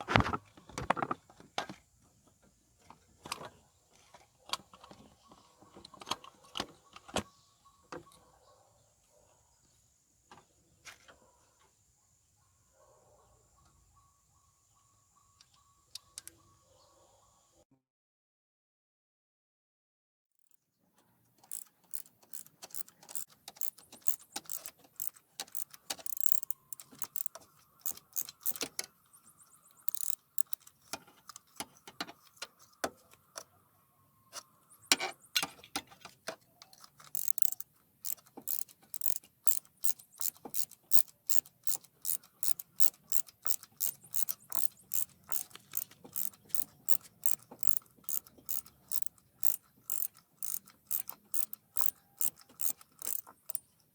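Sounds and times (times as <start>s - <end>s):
ratchet wrench clicking: 21.4s - 28.9s, 29.6s - 32.5s, 36.7s - 53.7s.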